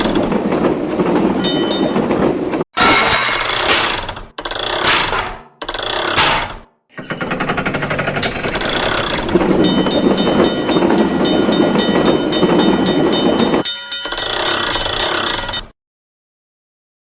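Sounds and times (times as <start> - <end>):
fast rattling clatter: 7.1 - 13.6
thin ringing tone: 8.2 - 15.6.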